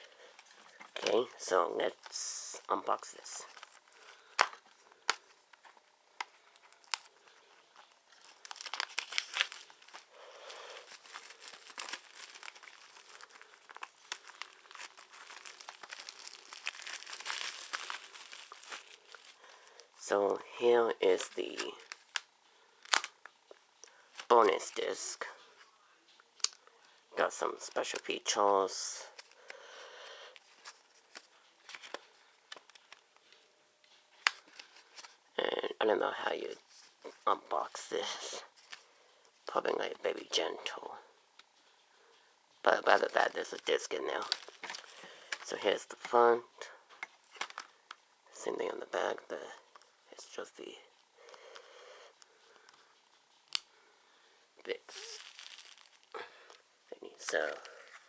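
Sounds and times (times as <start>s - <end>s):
packaging rustling: 0.0s - 20.2s, 20.9s - 23.4s, 29.1s - 33.5s, 42.9s - 46.1s, 46.9s - 48.0s, 54.8s - 58.0s
shrink-wrap crinkling and tearing: 6.5s - 20.1s, 21.1s - 23.3s, 42.9s - 46.1s, 54.7s - 56.6s.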